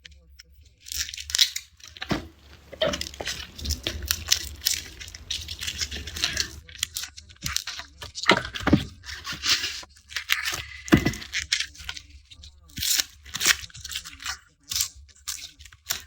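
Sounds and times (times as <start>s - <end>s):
crisp snaps: 2.0s - 6.6s
garlic skins tearing and crackling: 2.1s - 6.6s.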